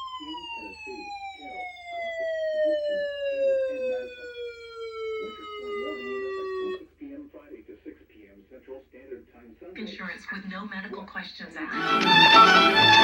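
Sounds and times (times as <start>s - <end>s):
siren-like tone sliding down: 0.0s - 6.8s
faint speech: 5.2s - 13.0s.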